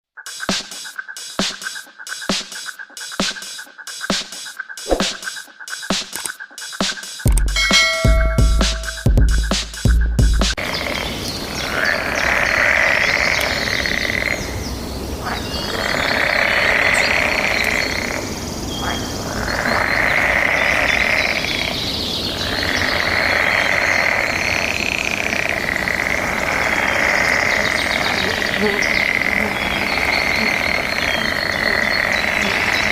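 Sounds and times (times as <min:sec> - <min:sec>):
buzzing animal chorus: 0:10.6 - 0:32.9
faint bird chirps: 0:26.2 - 0:32.9.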